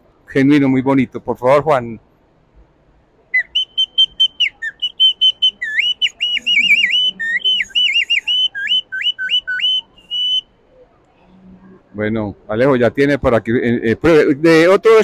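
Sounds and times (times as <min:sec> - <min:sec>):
bird-call whistle: 0:03.3 - 0:10.5.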